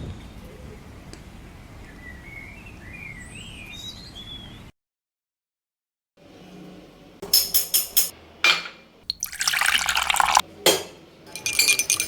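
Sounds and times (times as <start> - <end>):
liquid pouring into a glass: 9.1 - 10.4
glass clinks: 11.3 - 12.0.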